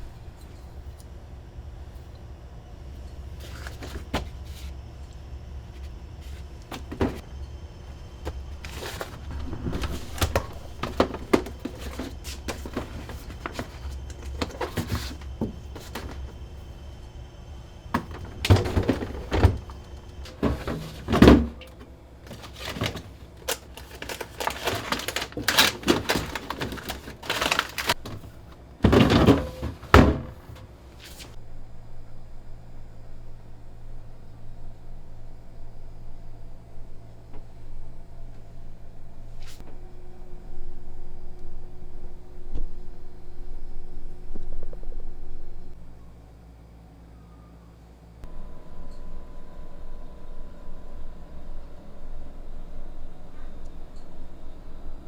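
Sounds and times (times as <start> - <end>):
steady low hum: 0.0 - 55.0
items being moved and set down: 3.0 - 4.8, 5.7 - 7.6, 8.2 - 16.8, 17.9 - 31.4
knocks and clunks: 17.9 - 23.2.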